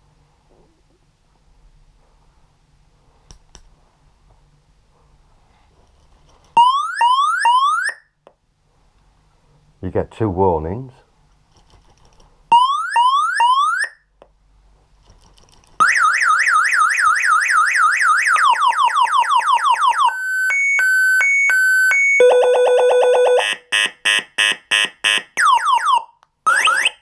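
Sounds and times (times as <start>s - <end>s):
alarm siren cycling tones: 6.6s - 8.1s, 12.5s - 14.0s, 15.8s - 27.0s.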